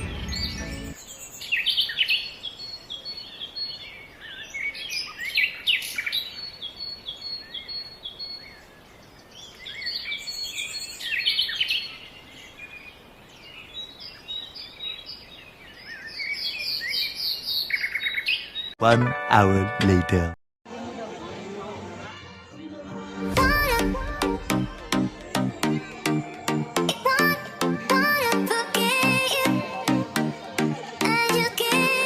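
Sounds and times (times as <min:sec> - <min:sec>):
birds chirping and calling: 0:00.0 - 0:18.8.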